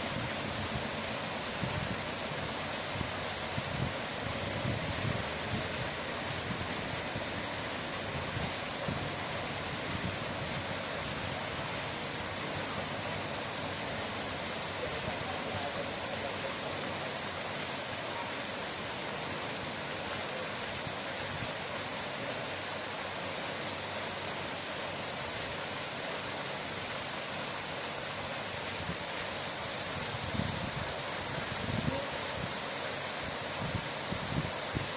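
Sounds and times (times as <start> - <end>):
running water rushing: 0.0 - 34.9.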